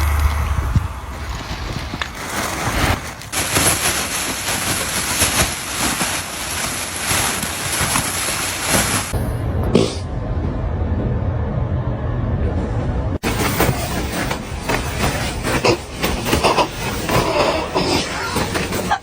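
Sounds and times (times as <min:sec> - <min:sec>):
light crackle: 0:00.0 - 0:09.2.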